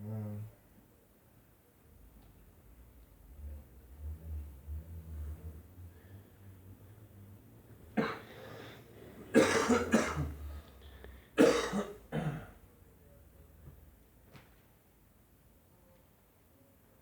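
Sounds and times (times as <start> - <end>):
person coughing: 8.0 - 8.4, 9.3 - 10.4, 11.4 - 12.6.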